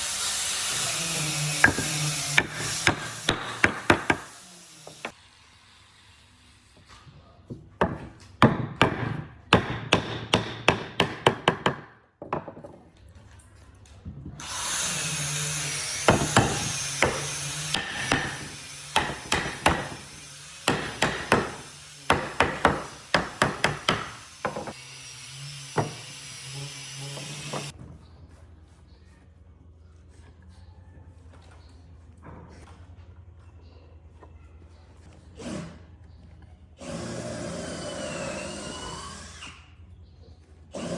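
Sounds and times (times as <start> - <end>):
power tool running: 14.4 - 27.7.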